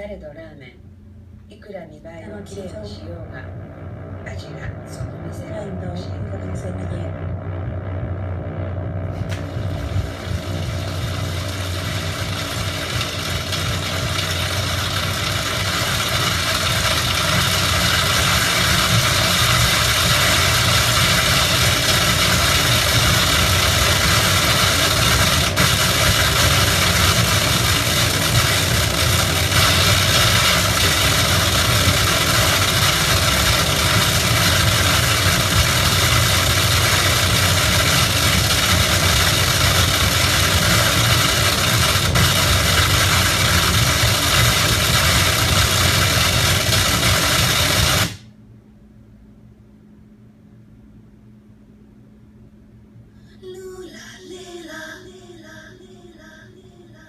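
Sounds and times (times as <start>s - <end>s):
motor or blower humming: 2.1s - 48.3s.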